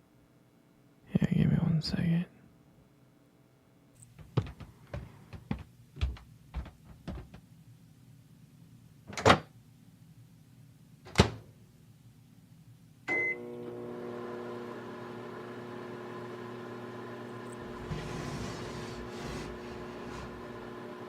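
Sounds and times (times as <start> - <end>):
microwave oven humming: 13.0 - 21.0.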